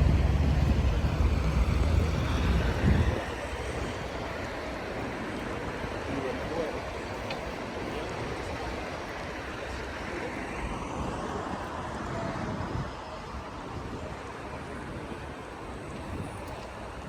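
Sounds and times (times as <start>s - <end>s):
vehicle passing by: 0.0s - 3.9s
city street traffic: 0.0s - 17.0s.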